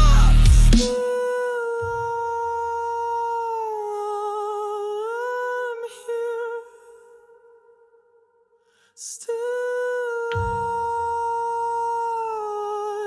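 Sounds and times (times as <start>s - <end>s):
synthetic voice humming: 0.0s - 1.0s.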